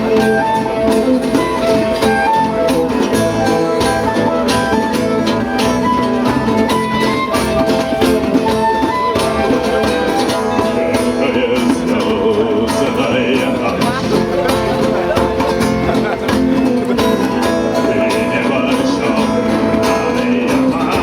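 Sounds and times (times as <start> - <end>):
percussion beat: 0.0 - 21.0
plucked strings: 0.0 - 21.0.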